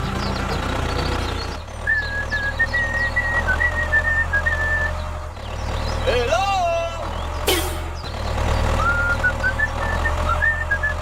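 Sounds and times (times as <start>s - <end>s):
whistled tune: 1.8s - 5.0s, 8.8s - 11.0s.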